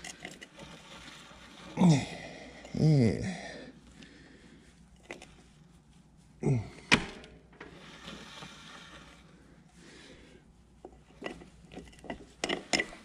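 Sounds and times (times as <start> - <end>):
hands rustling: 3.8 - 6.4.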